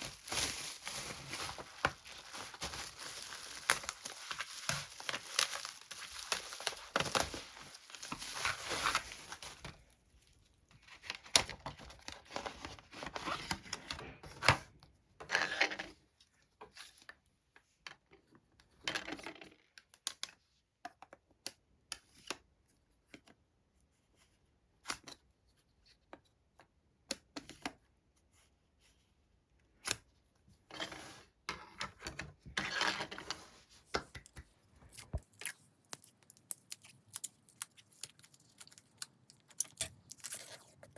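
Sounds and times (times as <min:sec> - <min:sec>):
packaging tearing and crinkling: 0:00.0 - 0:09.7
clicks and taps of items: 0:33.9 - 0:35.3.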